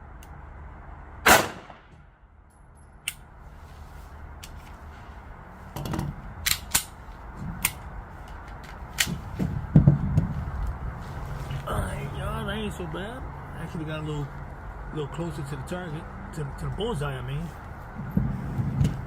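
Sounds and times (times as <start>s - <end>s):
loud handgun shot: 1.2s - 2.0s.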